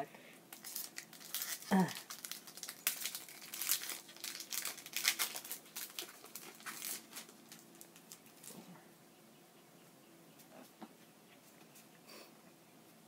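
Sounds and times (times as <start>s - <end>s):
foil wrapper crinkling: 0.5s - 8.6s.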